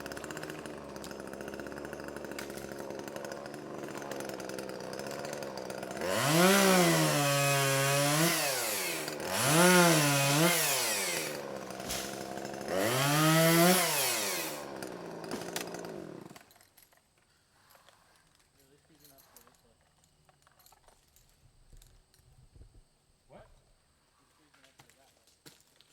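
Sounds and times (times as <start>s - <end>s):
chainsaw idling: 0.0s - 16.5s
chainsaw cutting wood: 0.0s - 16.8s.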